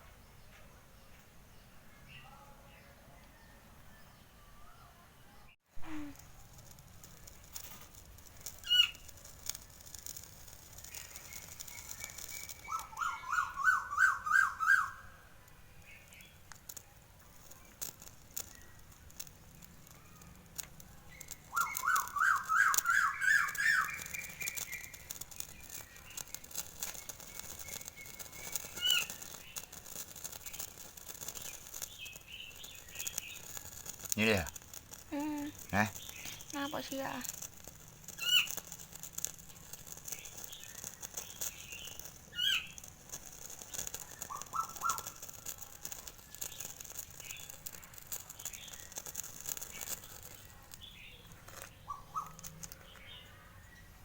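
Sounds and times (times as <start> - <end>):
sharp bird chirp: 10.8 - 15.2, 21.1 - 33.9, 43.7 - 45.2, 50.8 - 53.9
bird calling rising notes: 11.2 - 15.1.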